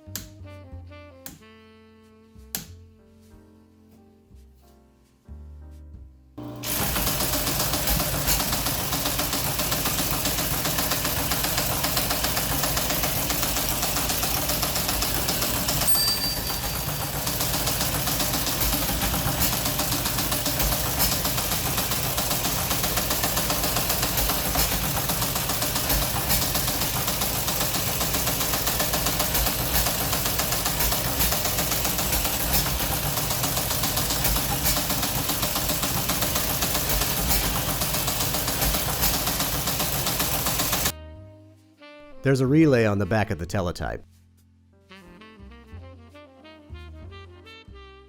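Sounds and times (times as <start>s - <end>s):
teleprinter clattering: 6.5s - 40.9s
brief high tone: 15.9s - 16.8s.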